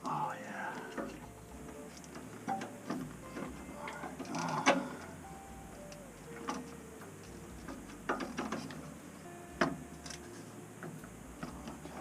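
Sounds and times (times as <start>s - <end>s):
tool handling clicks and knocks: 0.9s - 4.9s.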